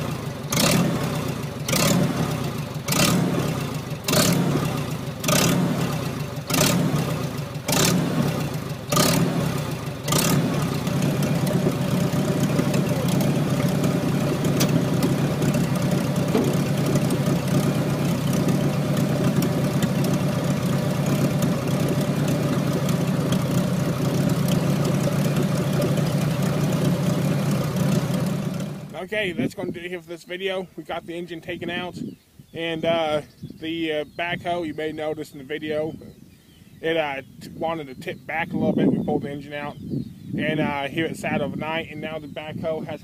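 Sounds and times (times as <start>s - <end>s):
engine idling: 0.0s - 29.1s.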